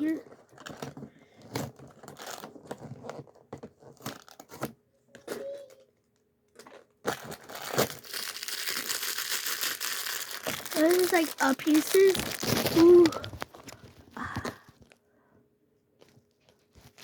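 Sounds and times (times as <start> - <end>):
packaging crinkling and tearing: 0.0 - 4.7, 6.6 - 15.0, 16.7 - 17.0
lego pieces clicking and rattling: 8.1 - 13.5.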